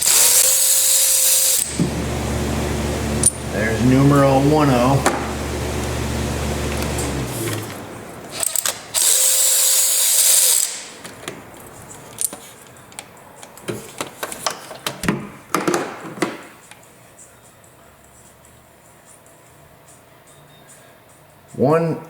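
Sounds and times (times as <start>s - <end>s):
metal parts clattering: 7.5s - 10.8s
loud hiss: 8.3s - 10.9s.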